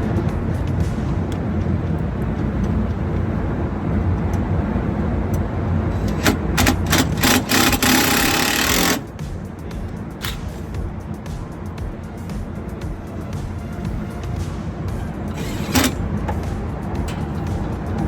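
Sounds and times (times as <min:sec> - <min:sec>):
rush of noise: 0:00.0 - 0:07.5
low mechanical rumble: 0:00.0 - 0:18.0.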